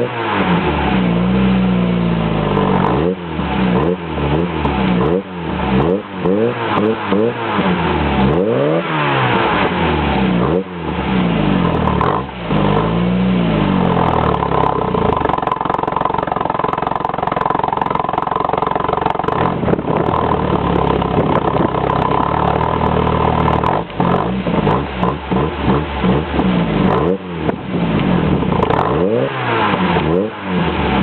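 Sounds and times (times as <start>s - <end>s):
car engine revving: 0.0s - 31.0s.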